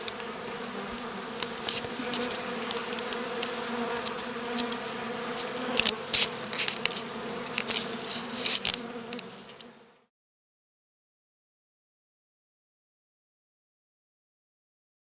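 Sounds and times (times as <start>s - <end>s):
honey bees humming: 0.0s - 10.0s
sharp crackling clicks: 5.4s - 9.7s.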